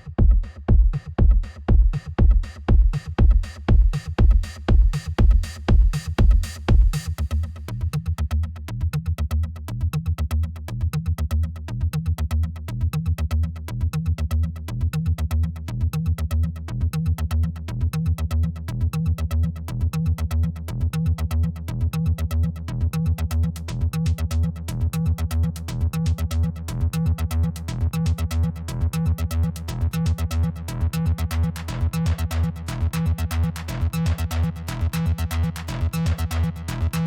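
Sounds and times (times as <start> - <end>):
electronic music with heavy bass: 0.0 - 8.4, 18.9 - 37.0.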